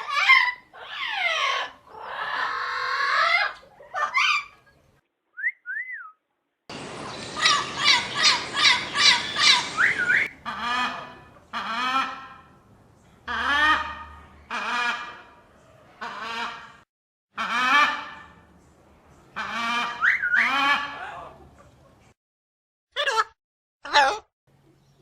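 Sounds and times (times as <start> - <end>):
parrot calling and whistling: 6.7 - 10.3.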